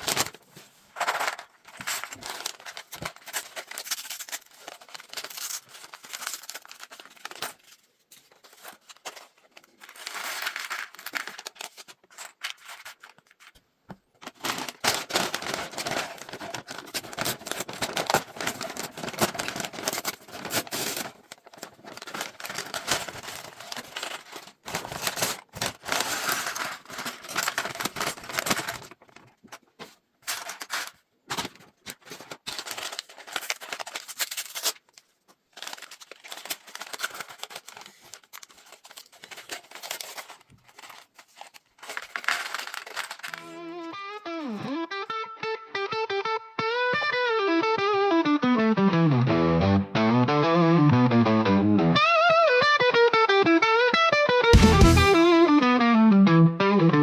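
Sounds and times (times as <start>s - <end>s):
plastic bags crinkling and tearing: 0.0s - 13.6s, 14.2s - 44.6s.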